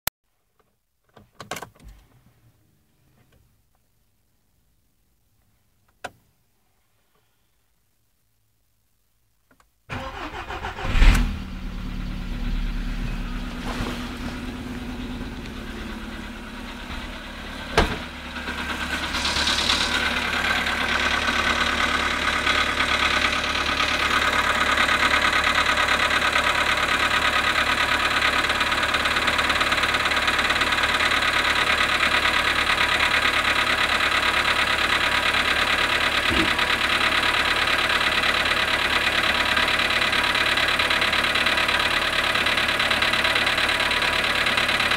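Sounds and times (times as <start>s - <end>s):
car engine idling with knocking: 12.0s - 44.9s.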